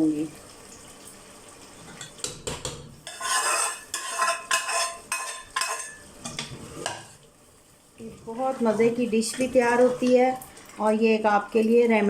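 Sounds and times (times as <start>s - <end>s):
metal spoon scraping in a pot: 3.0s - 7.1s.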